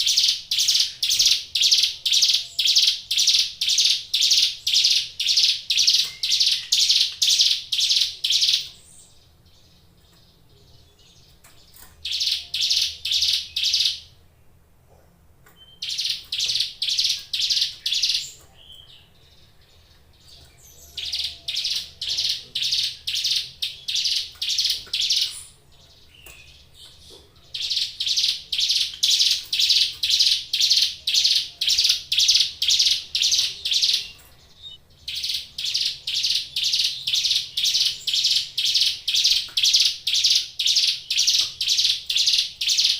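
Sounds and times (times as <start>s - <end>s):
bird singing rapid high notes: 15.6s - 18.9s, 20.6s - 42.9s.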